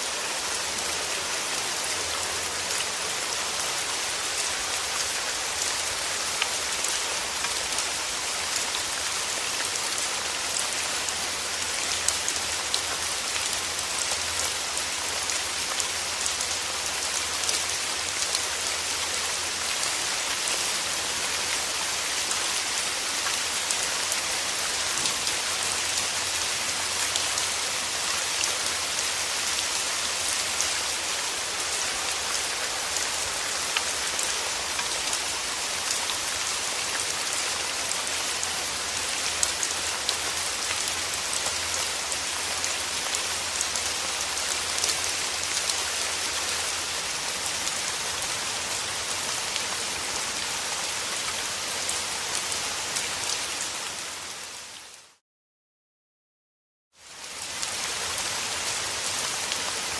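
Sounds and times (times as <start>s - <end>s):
steady rain falling: 0.0s - 55.2s, 57.0s - 59.9s.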